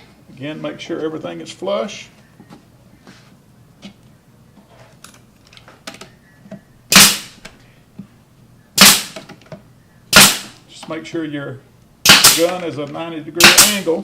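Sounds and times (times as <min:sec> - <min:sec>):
nailer firing with hiss: 0:06.9 - 0:07.4, 0:08.8 - 0:09.2, 0:10.1 - 0:10.5, 0:12.0 - 0:12.6, 0:13.4 - 0:13.9.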